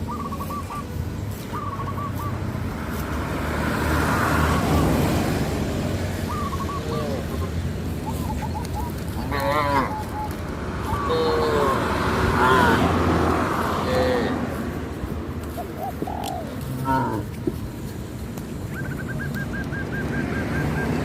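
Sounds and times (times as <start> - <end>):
farmyard animals calling: 0.0 - 2.5, 6.2 - 14.7, 15.4 - 17.6.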